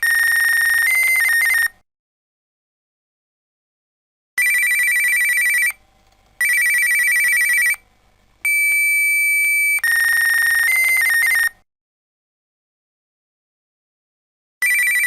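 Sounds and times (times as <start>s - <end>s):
fax machine beeping tones: 8.5s - 11.5s.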